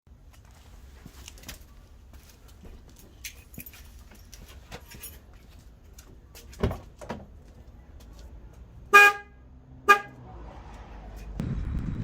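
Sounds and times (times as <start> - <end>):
dual-tone car horn blast: 8.9 - 10.3.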